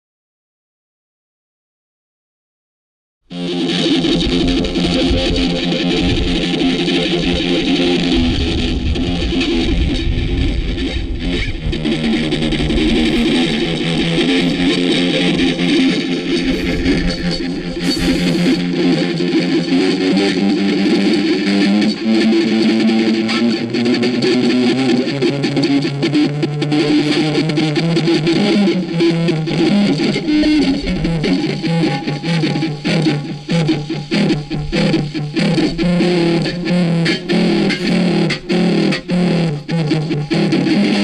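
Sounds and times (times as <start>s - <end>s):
electric guitar music: 3.3s - 41.0s.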